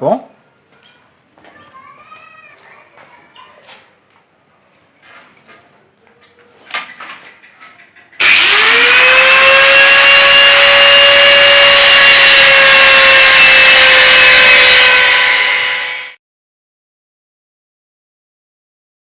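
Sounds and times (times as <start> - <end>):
angle grinder cutting steel: 8.2 - 16.2.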